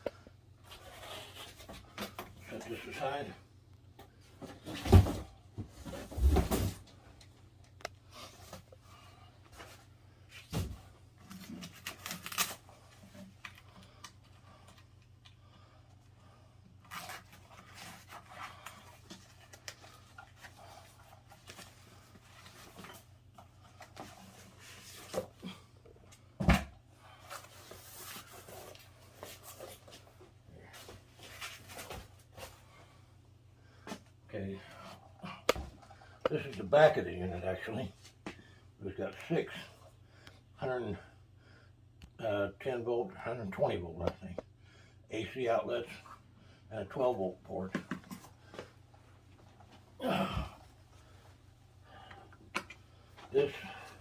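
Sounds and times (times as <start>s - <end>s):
cardboard and foam rustling: 27.2s - 32.7s.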